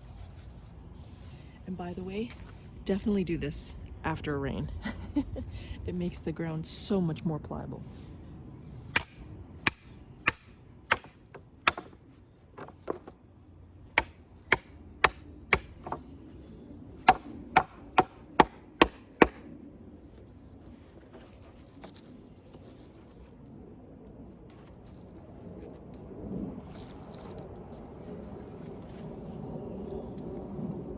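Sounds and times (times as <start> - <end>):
hammer striking metal stake: 8.9 - 12.0, 14.0 - 16.0, 17.1 - 19.5.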